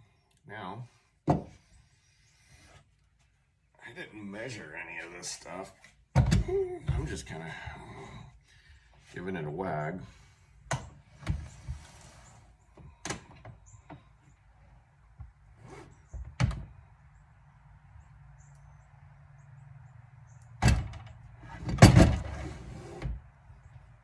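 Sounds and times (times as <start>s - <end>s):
loud clunks: 20.6s - 22.6s.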